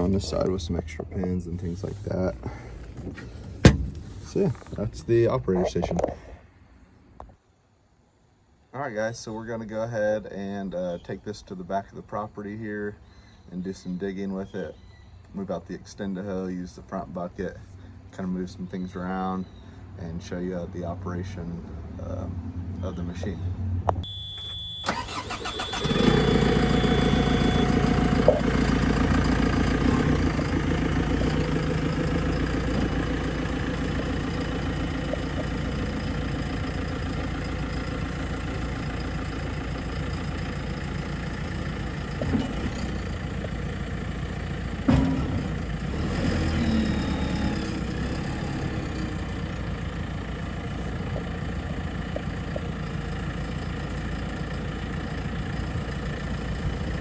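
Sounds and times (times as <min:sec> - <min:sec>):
diesel engine starting and idling: 0:17.2 - 0:57.0
high warning beep: 0:24.0 - 0:28.4.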